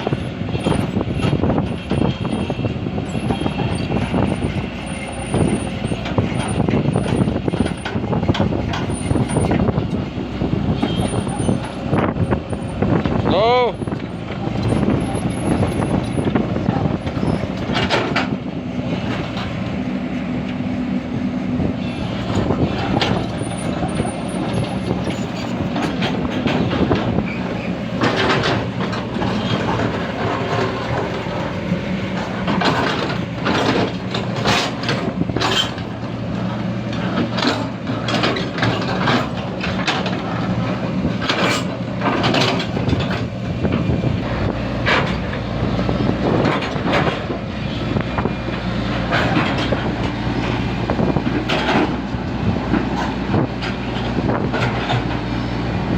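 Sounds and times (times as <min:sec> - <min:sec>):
diesel engine running: 0:00.0 - 0:55.9
metallic clanks and rattles: 0:13.9 - 0:18.4, 0:22.0 - 0:45.4, 0:46.2 - 0:55.4.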